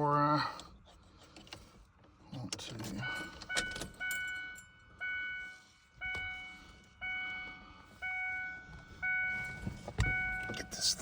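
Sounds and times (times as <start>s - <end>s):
dashboard warning chime: 2.8s - 11.0s.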